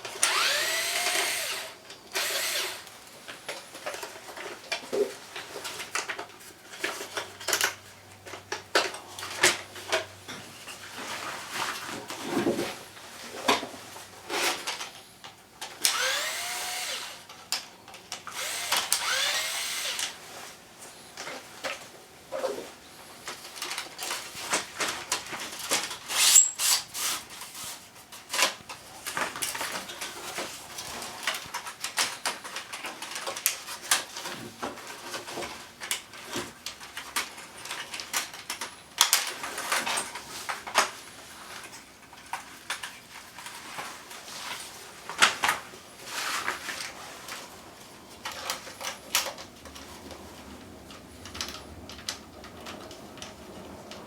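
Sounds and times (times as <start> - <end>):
plastic parts clicking and scraping: 23.3 - 54.0.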